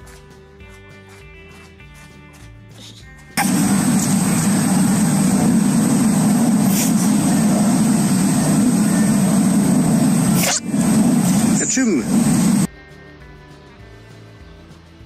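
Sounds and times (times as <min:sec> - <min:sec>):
loud low rumble: 0:03.4 - 0:12.7
short hiss: 0:03.4 - 0:12.7
thin high whine: 0:03.4 - 0:12.7.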